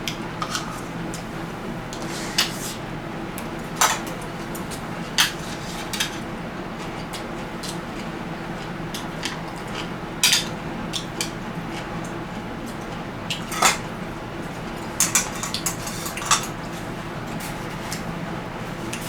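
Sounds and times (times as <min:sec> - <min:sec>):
low background hum: 0:00.0 - 0:19.0
utensils clinking against dishes: 0:00.1 - 0:01.2, 0:08.9 - 0:11.8, 0:12.7 - 0:13.9, 0:14.8 - 0:16.6.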